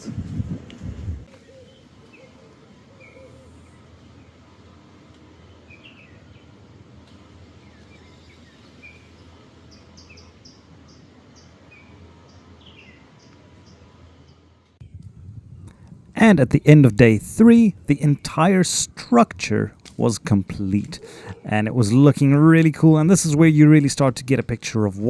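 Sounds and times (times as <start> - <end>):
steady low background hum: 13.6 - 25.0
birds chirping: 15.6 - 25.0.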